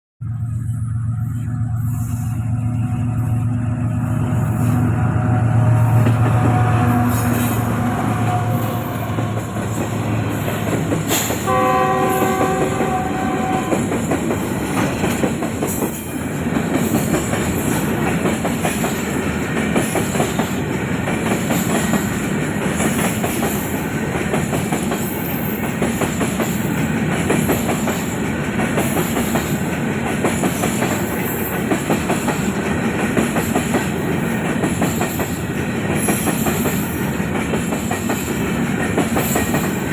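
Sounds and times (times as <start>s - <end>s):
locomotive horn: 1.4s - 14.4s
train wheels clattering over rails: 5.9s - 39.9s.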